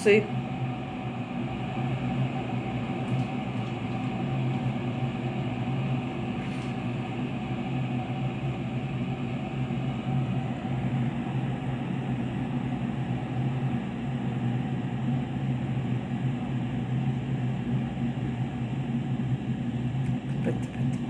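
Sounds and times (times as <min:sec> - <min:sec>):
electric kettle heating water: 0:00.0 - 0:21.0.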